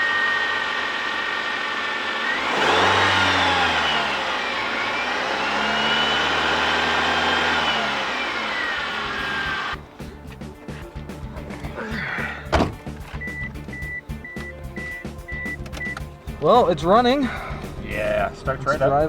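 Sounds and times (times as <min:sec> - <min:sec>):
car engine revving: 0:00.0 - 0:10.8
high engine whine: 0:00.0 - 0:19.0.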